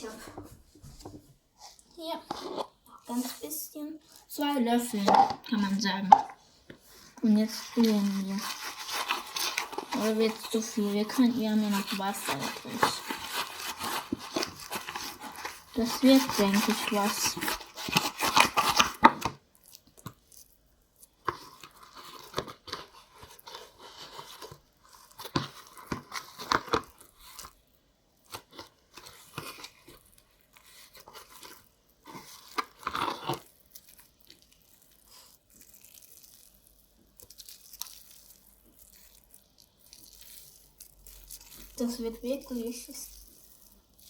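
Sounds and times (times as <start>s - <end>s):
slime scraping and pulling: 1.6s - 44.0s.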